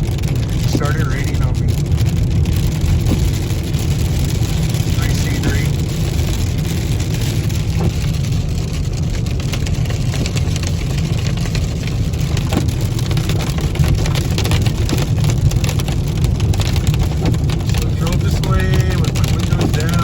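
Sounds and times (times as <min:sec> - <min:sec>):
raindrops ticking on car: 0:00.0 - 0:20.0
road and wind noise in car: 0:00.0 - 0:20.0.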